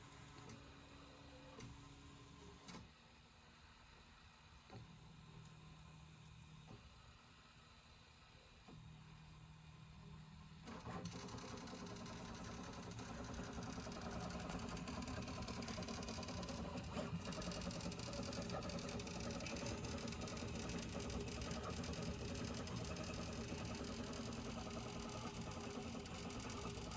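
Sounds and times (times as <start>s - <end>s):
printer buzzing chatter: 11.1s - 26.9s.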